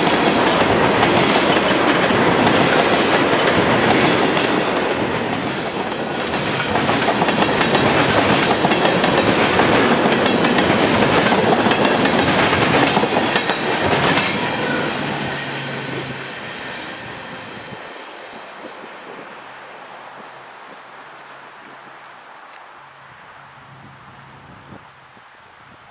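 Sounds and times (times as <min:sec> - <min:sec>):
train wheels clicking over rail joints: 0:00.0 - 0:17.5.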